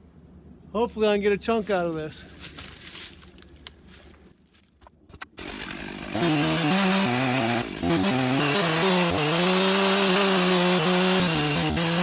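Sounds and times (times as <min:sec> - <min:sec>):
chainsaw cutting log: 0:05.2 - 0:12.0.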